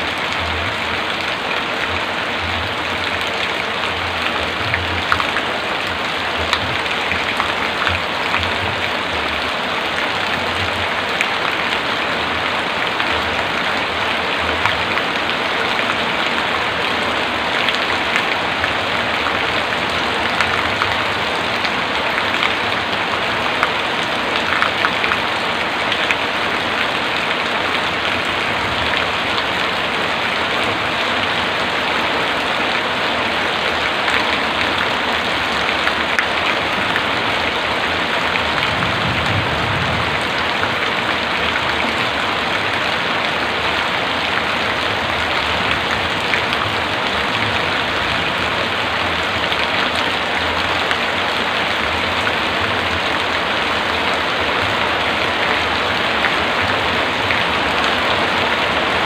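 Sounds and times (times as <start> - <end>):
heavy rain hissing: 0.0 - 59.0.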